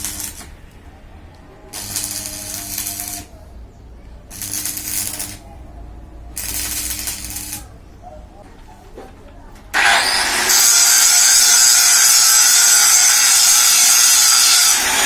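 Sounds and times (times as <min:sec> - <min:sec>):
motor tool with metallic rattle: 0:00.0 - 0:00.5, 0:01.8 - 0:03.3, 0:04.3 - 0:05.4, 0:06.4 - 0:07.7, 0:09.8 - 0:15.0.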